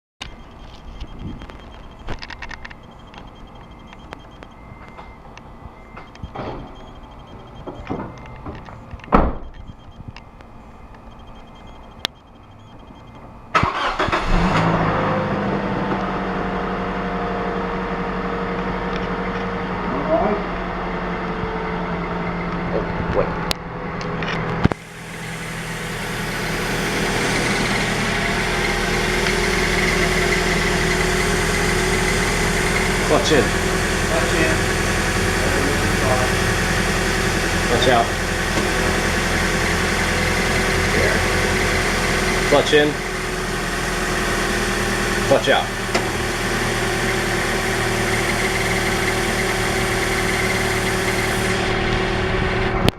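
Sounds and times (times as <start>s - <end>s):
sharp clicks: 0.2s - 5.0s
car engine idling: 0.2s - 52.9s
faint high-pitched chirping: 8.7s - 13.2s.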